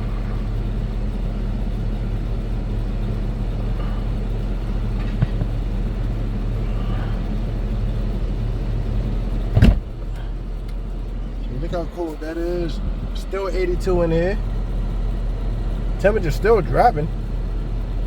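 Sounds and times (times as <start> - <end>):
car engine idling: 0.0 - 18.0
car door slamming: 9.5 - 10.2.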